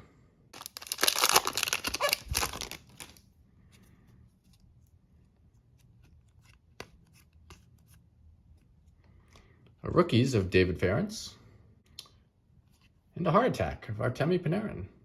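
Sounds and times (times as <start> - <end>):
foil wrapper crinkling: 0.6 - 3.2.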